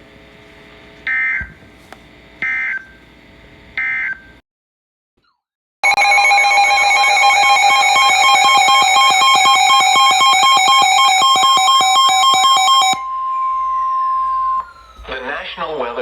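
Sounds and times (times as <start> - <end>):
electronic warbling alarm: 5.8 - 16.0.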